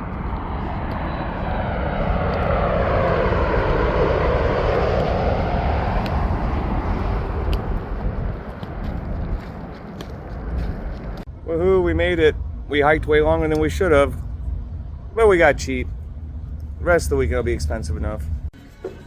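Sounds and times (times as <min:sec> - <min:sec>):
airplane engines passing overhead: 0:00.0 - 0:19.0.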